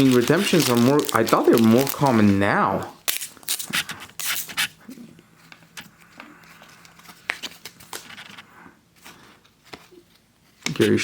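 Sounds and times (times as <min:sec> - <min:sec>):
cards being flipped: 0:05.4 - 0:11.0.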